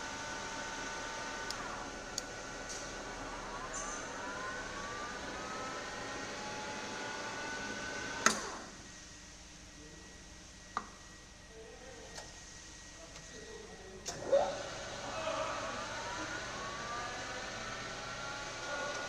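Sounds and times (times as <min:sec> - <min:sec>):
lathe spindle whine: 0:00.0 - 0:08.6, 0:14.2 - 0:19.0.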